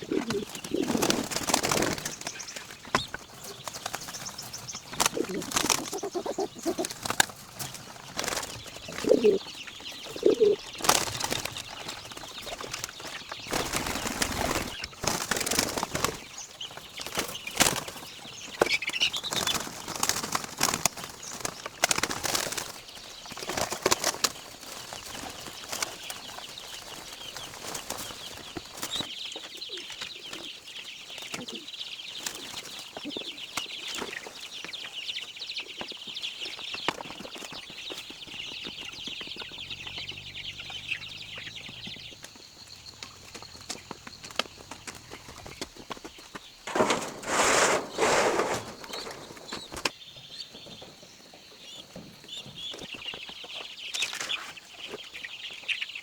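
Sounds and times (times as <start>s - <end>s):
pigeons flapping wings: 0.0s - 29.1s, 42.9s - 49.9s.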